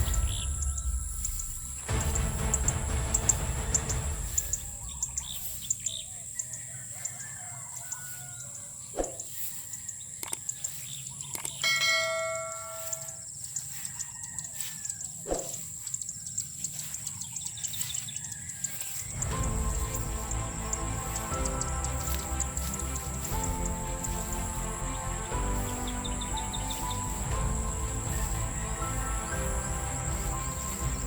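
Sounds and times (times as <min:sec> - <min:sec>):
birds chirping: 0:00.0 - 0:31.0
insect drone: 0:00.0 - 0:31.0
held ringing tone: 0:11.6 - 0:13.8.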